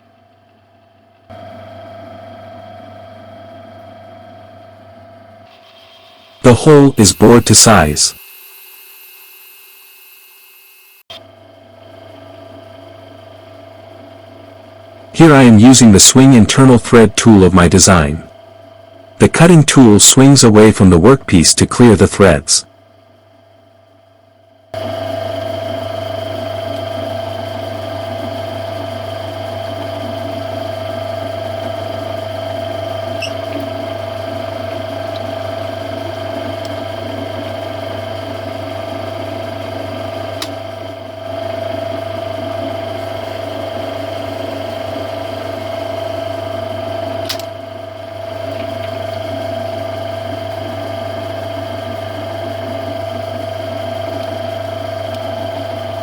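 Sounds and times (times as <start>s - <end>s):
metal lathe humming and whining: 8.2s - 11.0s.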